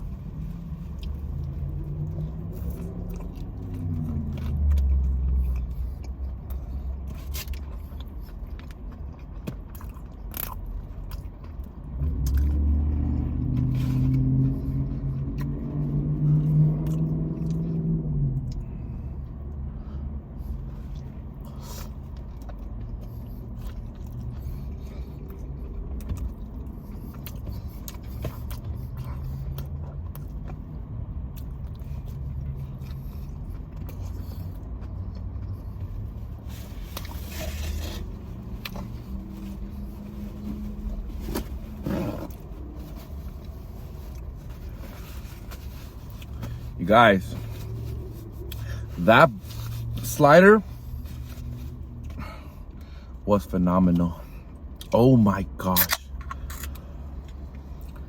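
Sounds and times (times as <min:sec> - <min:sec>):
biting and chewing: 0:00.0 - 0:17.6, 0:20.4 - 0:46.7
vehicle engine rumble: 0:00.0 - 0:58.0.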